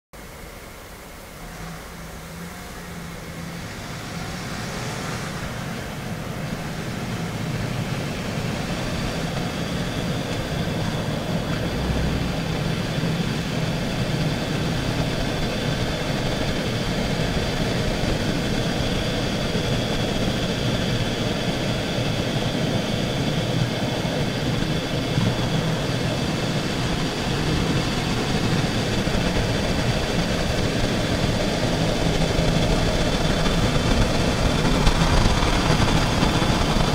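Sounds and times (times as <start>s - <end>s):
hissing scrape with high whine: 0.4s - 22.2s.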